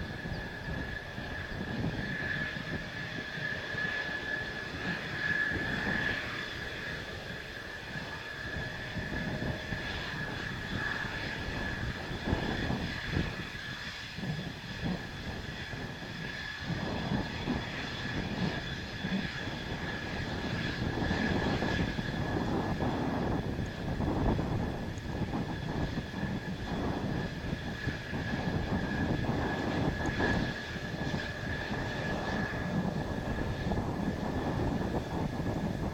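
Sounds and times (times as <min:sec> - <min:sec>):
jet engine whine and rumble: 0:00.0 - 0:35.9
wind buffeting microphone: 0:00.0 - 0:35.9.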